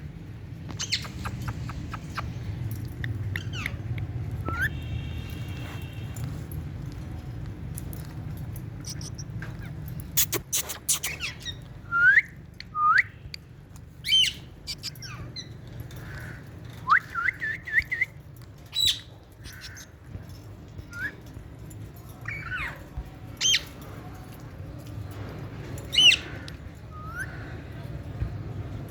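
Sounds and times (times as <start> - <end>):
parakeet calling: 0.8 - 2.4, 3.4 - 3.9.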